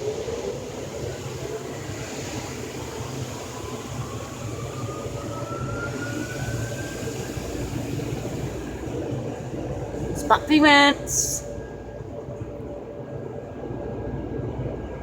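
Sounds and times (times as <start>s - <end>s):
car wash dryer blowers roaring: 0.0s - 11.6s.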